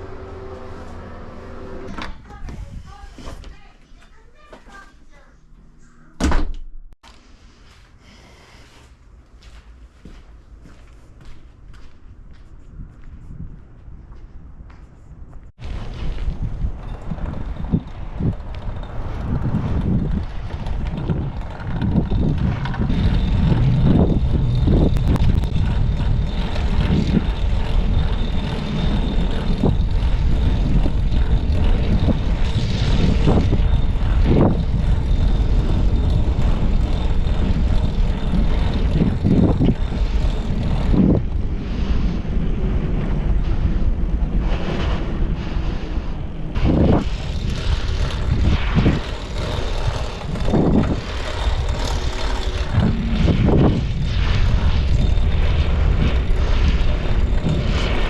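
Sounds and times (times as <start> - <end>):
heavy machinery engine rumble: 15.6 - 58.0.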